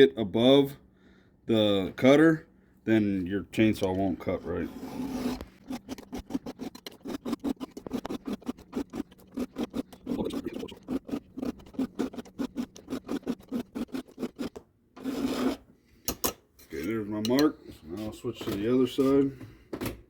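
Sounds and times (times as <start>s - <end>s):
file rasping on chainsaw chain: 4.5s - 15.6s.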